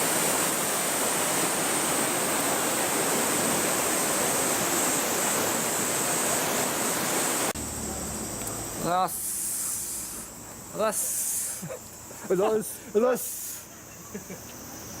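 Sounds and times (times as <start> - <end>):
mountain stream rushing: 0.0 - 7.6.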